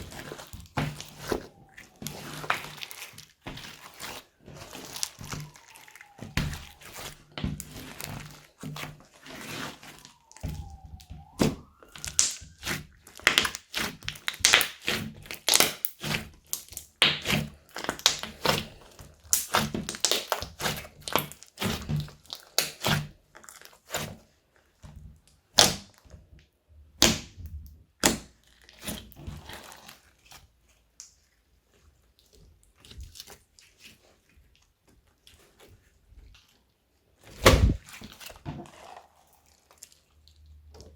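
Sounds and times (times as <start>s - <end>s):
slime snaps: 11.4s - 13.6s
slime sticky clicks and pops: 11.4s - 18.3s, 19.3s - 20.5s.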